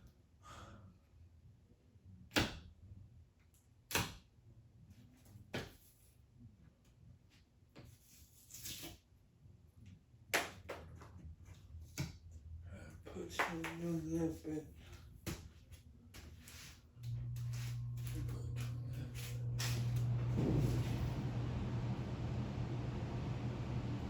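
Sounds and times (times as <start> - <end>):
ceiling fan humming: 9.7 - 24.0.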